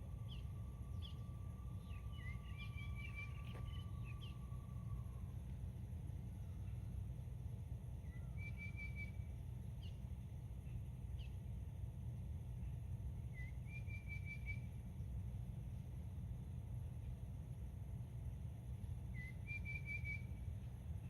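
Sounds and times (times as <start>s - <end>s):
steady low rumble: 0.0s - 19.5s, 20.1s - 21.0s
bird chirps: 0.1s - 4.7s, 8.0s - 10.0s, 13.3s - 14.7s, 19.2s - 20.4s
bird trilling: 0.2s - 5.1s.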